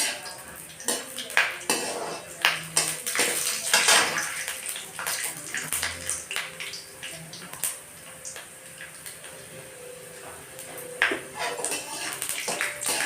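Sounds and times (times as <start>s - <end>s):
metal utensils scraping pot: 0.0s - 4.3s, 11.1s - 13.0s.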